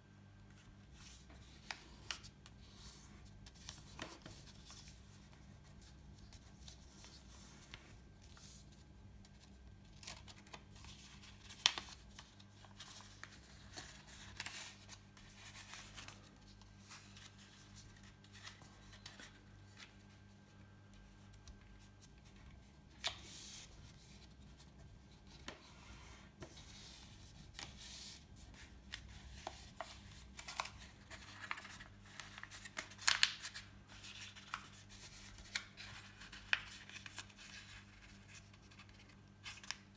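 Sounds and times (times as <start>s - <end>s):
paper rustling and crinkling: 0.6s - 39.9s
sharp paper crackles: 29.7s - 39.9s.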